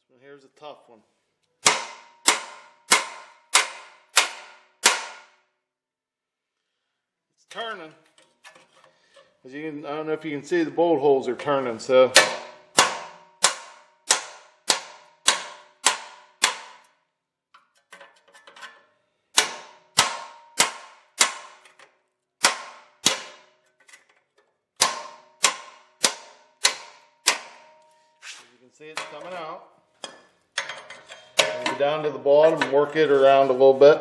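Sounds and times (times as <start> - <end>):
hammer striking steel chisel: 1.6 - 5.4, 12.1 - 17.0, 19.4 - 23.8, 24.8 - 28.0, 28.9 - 33.1.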